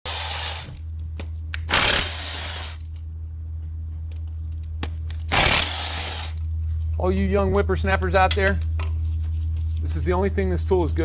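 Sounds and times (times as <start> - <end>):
steady low hum: 0.1 - 11.0.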